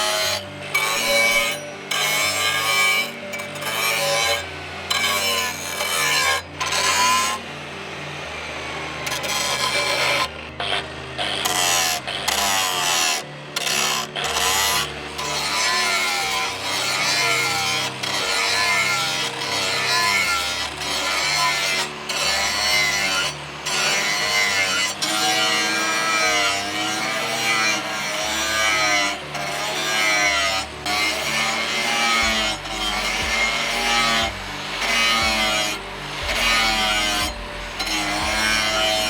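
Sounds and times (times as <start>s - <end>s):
file rasping on knife blade: 0.0s - 39.0s.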